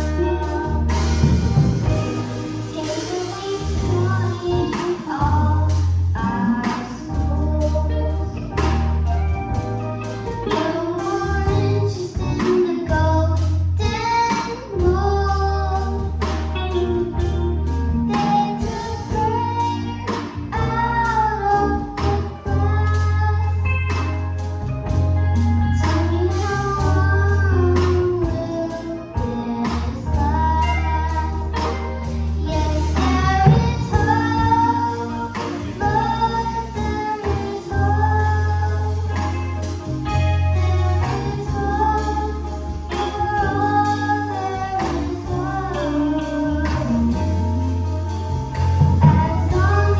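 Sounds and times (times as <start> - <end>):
drums: 0.0 - 49.9
guitar: 0.0 - 49.9
heavy bass line: 0.0 - 49.9
children's choir singing: 32.5 - 39.5, 40.3 - 47.1, 48.8 - 49.9.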